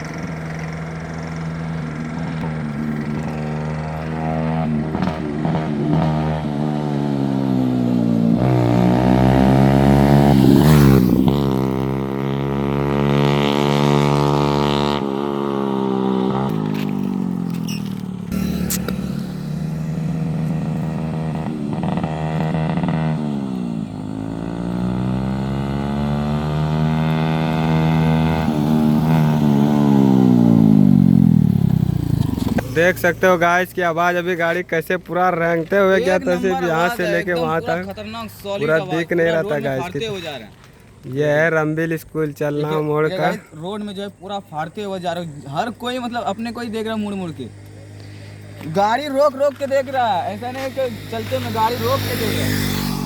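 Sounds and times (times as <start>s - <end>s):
motorcycle passing by: 0.0s - 34.6s, 45.4s - 53.0s.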